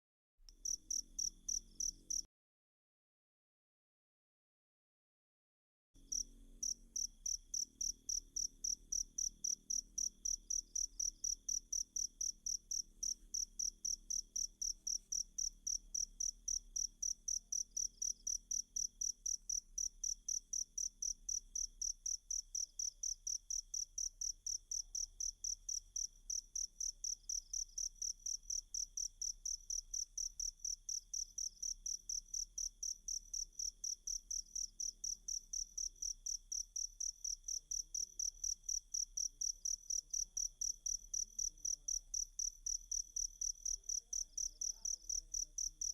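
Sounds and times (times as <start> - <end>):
cricket chirping: 0.6 - 2.3, 6.0 - 45.9.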